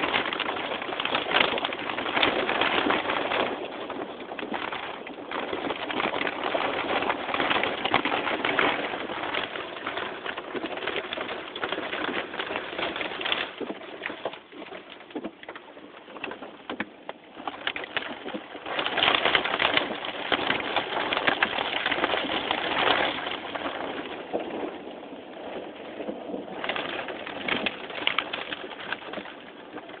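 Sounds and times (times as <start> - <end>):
heavy rain on car roof: 0.0 - 30.0.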